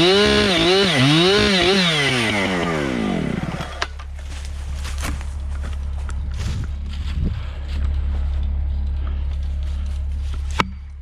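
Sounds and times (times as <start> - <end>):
chainsaw revving: 0.0 - 4.0.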